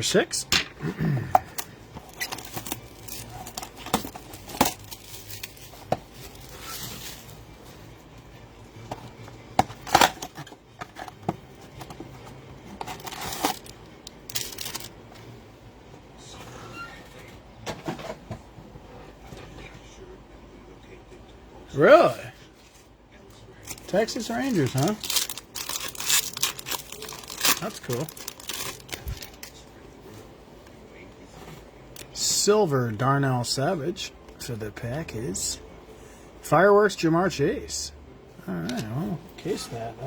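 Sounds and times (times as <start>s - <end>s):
cardboard and foil tearing: 2.1s - 7.4s, 12.8s - 14.9s, 23.7s - 29.6s.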